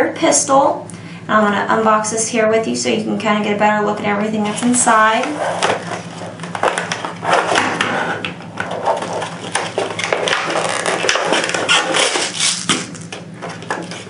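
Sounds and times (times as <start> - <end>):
hands rustling packaging: 8.6 - 14.0.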